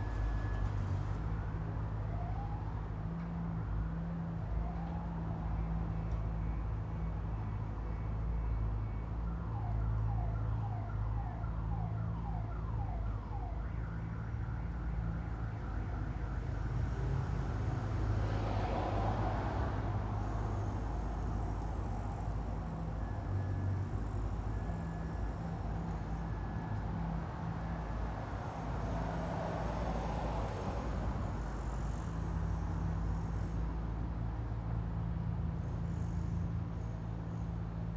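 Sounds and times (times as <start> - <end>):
low rumble of traffic: 0.0 - 37.9
siren sweeping: 9.4 - 17.1
passing vehicle hiss: 15.8 - 37.9.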